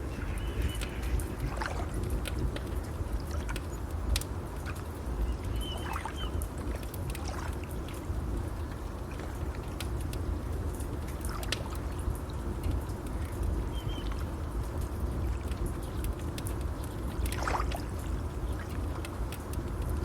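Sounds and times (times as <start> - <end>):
fire crackling and popping: 0.0 - 20.0
bird chirping: 0.1 - 1.1.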